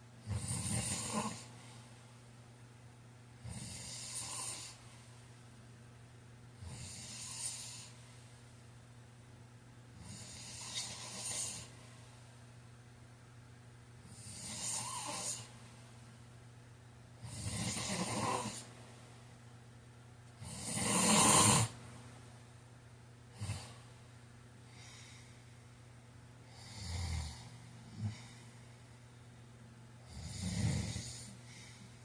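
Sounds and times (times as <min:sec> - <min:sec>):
low steady hum: 0:00.0 - 0:32.0
man snoring: 0:00.2 - 0:01.5, 0:03.4 - 0:04.8, 0:06.6 - 0:07.9, 0:10.0 - 0:11.7, 0:14.1 - 0:15.5, 0:17.2 - 0:18.7, 0:20.4 - 0:21.8, 0:26.5 - 0:28.3, 0:30.0 - 0:31.4
short snorts: 0:20.4 - 0:21.8.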